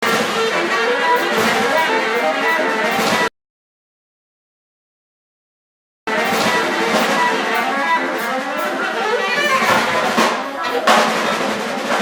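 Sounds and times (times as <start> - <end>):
brass: 0.0 - 3.3, 6.1 - 12.0
plucked string music: 0.0 - 3.3, 6.1 - 11.6.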